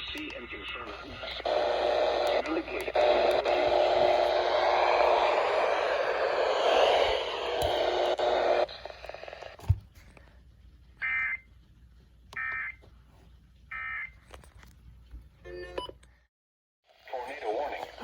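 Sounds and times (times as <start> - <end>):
loud radio static: 0.0 - 9.6, 17.0 - 18.0.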